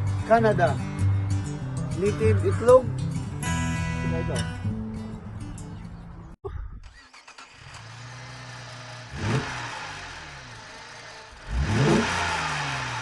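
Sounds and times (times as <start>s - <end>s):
vehicles driving past: 0.0s - 6.4s.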